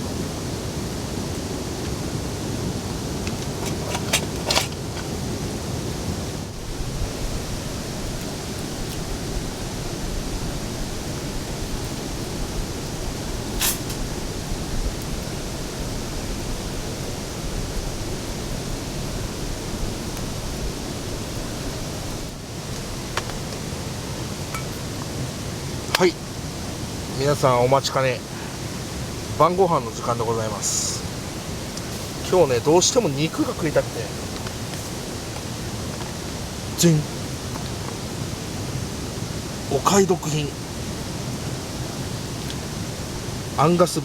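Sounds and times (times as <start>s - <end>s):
river rushing: 0.0s - 44.0s.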